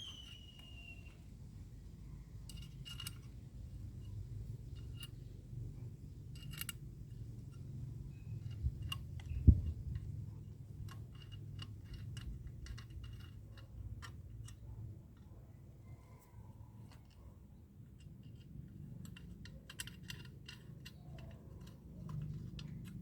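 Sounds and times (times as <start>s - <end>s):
light clicks and knocks: 16.8s - 23.0s.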